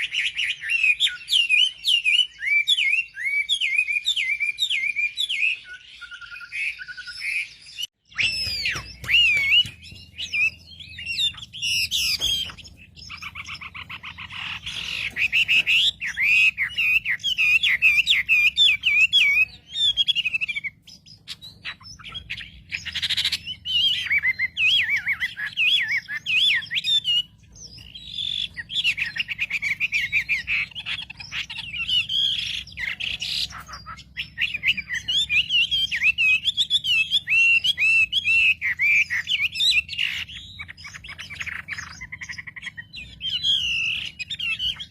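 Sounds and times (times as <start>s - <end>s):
songbird twittering high chirps: 0.0s - 44.9s.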